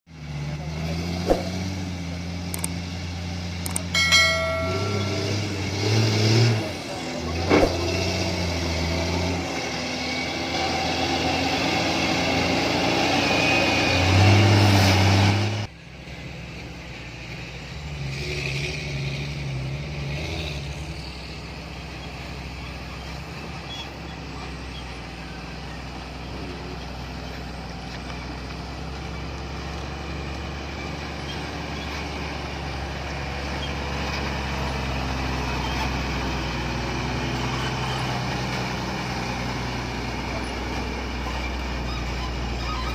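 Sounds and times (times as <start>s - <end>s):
quieter diesel drone: 0.2s - 14.7s
loud diesel engine running: 0.2s - 18.1s.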